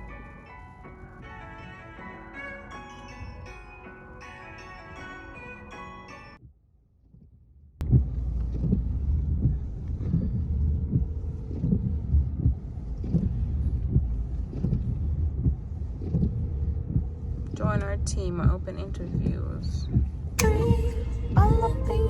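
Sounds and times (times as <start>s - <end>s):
low rumble: 7.2s - 22.0s
wind buffeting microphone: 7.8s - 22.0s.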